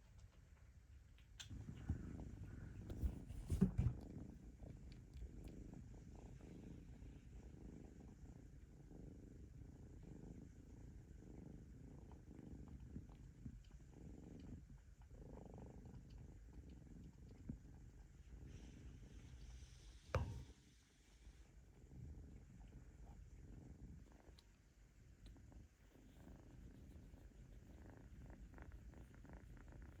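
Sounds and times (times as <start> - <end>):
kitten purring: 0.0 - 30.0
knocks: 20.2 - 20.5.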